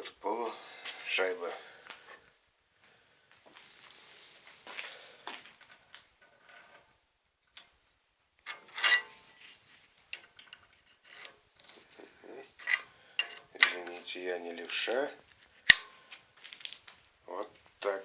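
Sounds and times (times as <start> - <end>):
clicks of small steel parts: 8.5 - 9.4, 10.1 - 14.1, 15.7 - 15.9
ringing metal clank: 8.5 - 9.4.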